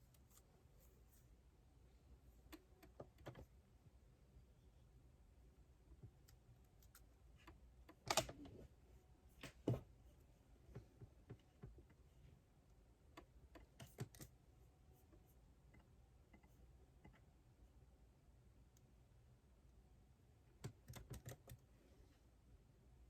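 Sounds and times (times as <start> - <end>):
computer keyboard keystrokes: 20.6 - 21.6.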